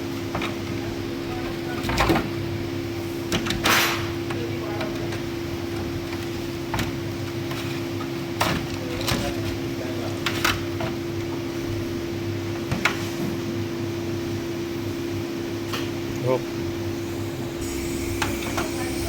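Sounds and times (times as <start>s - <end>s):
steady low hum: 13.3s - 19.0s.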